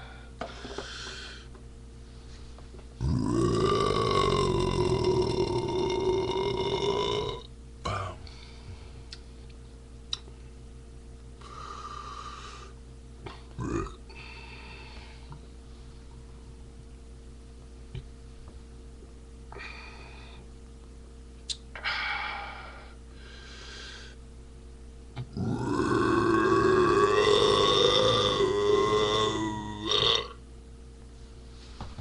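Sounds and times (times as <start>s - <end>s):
man burping: 3.0s - 8.3s, 13.3s - 14.2s, 25.2s - 30.4s.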